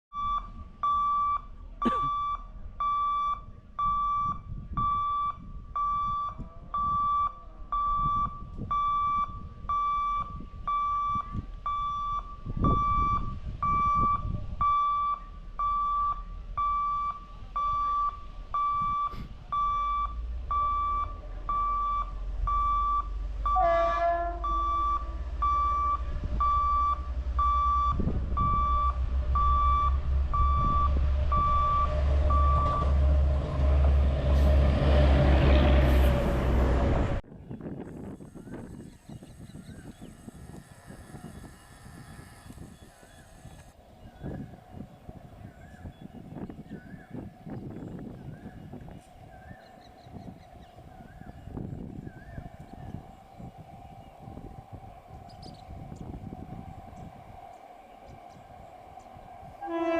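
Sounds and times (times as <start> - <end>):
level crossing warning beeps: 0.1 - 33.0
low rumble: 24.2 - 59.9.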